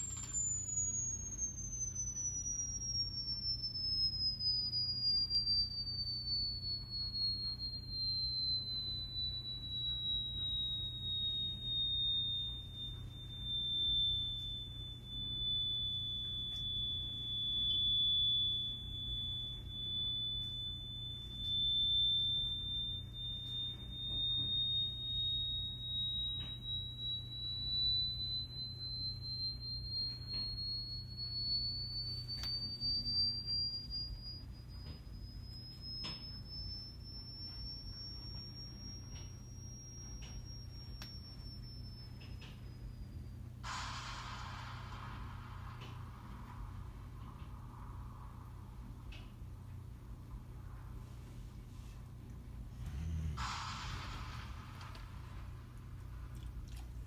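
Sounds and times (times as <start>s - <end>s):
steady low hum: 0.0s - 57.0s
high electronic tone gliding in pitch: 52.7s - 55.6s.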